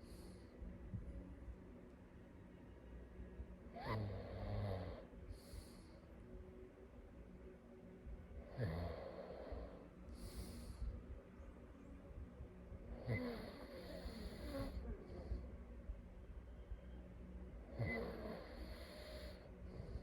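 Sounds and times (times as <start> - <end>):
person snoring: 13.0 - 15.4.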